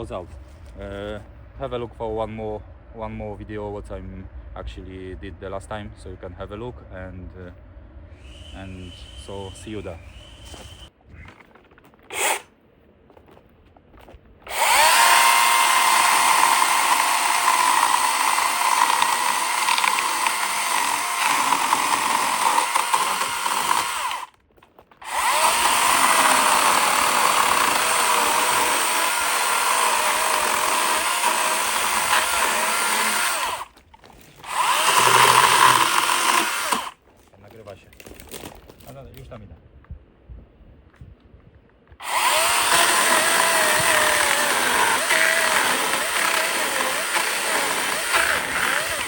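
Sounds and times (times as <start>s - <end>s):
electric chainsaw whine: 8.2s - 10.9s, 12.1s - 12.4s, 14.5s - 24.3s, 25.0s - 33.7s, 34.4s - 37.0s, 42.0s - 49.0s.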